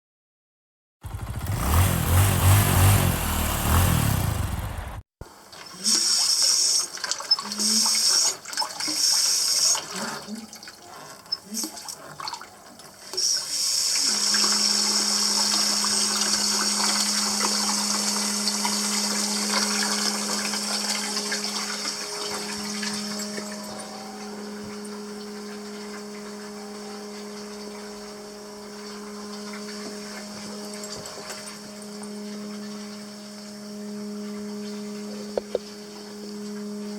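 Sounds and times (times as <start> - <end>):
water running through plumbing: 5.9 - 23.9
steady low hum: 14.1 - 36.9.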